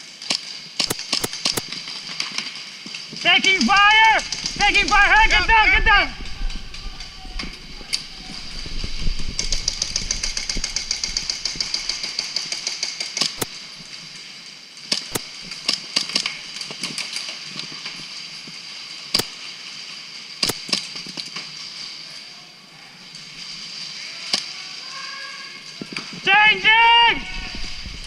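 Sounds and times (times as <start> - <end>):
airsoft single shots: 0.8 - 1.8
airsoft gun full-auto burst: 3.8 - 5.8, 9.4 - 13.6.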